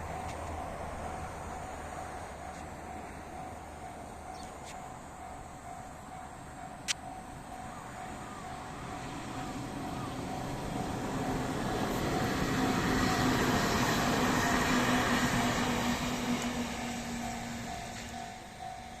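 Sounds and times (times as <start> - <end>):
level crossing warning bell: 0.0 - 14.7, 16.6 - 19.0
low train hum: 0.0 - 19.0
train wheels rushing: 0.0 - 19.0.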